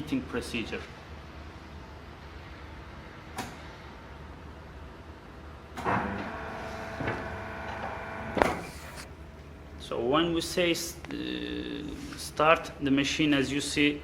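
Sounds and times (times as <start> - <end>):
hydraulic drive whining: 5.8 - 9.1.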